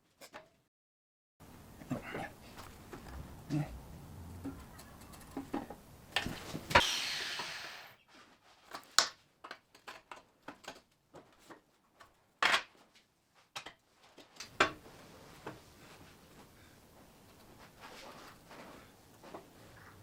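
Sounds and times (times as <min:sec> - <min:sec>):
hiss: 0:06.8 - 0:08.0.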